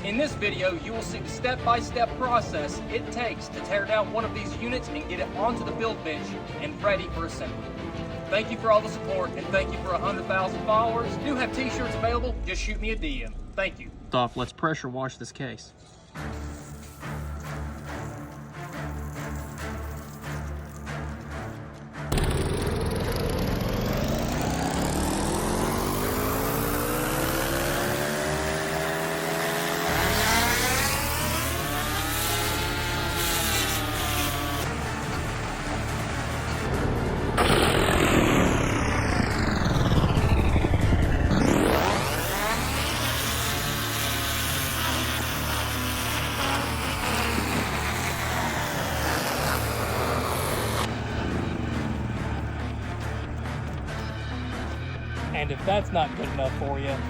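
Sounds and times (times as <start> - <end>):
pressure washer spraying: 42.2 - 50.8.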